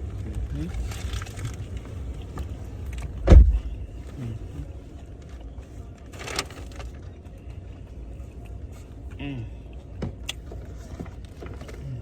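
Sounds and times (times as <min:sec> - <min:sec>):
low rumble inside car: 0:00.0 - 0:12.0
sharp thump: 0:03.2 - 0:03.7.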